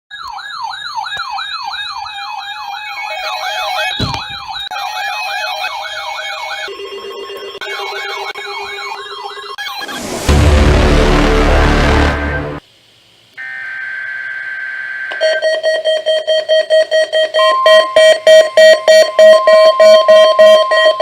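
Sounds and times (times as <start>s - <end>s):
electronic sirens yelping: 0.1s - 10.4s, 16.6s - 21.0s
steady low tone: 10.3s - 12.6s.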